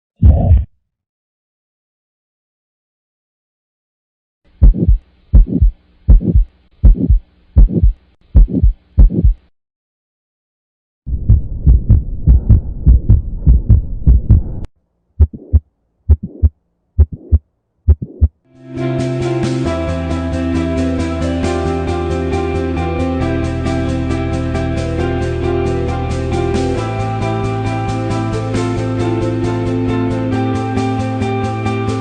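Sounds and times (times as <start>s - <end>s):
heart murmur rushing noise: 4.6s - 9.4s, 11.1s - 18.3s
heartbeat through stethoscope: 4.6s - 9.5s, 11.1s - 18.4s.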